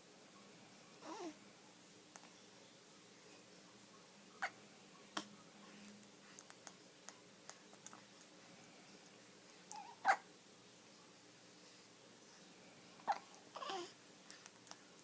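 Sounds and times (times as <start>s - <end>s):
baby hiccuping: 9.7s - 10.2s, 13.0s - 13.9s.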